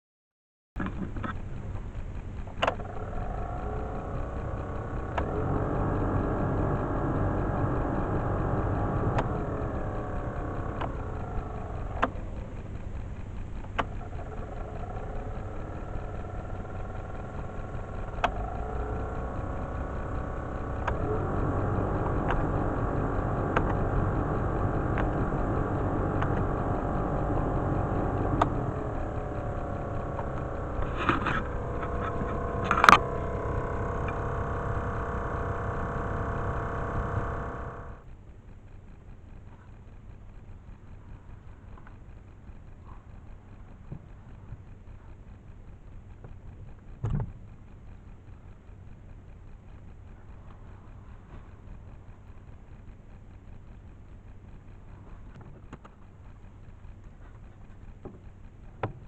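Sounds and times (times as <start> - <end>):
sharp clicks: 0.8 - 38.1
blower motor whining: 0.8 - 45.3
steady low hum: 0.8 - 59.0.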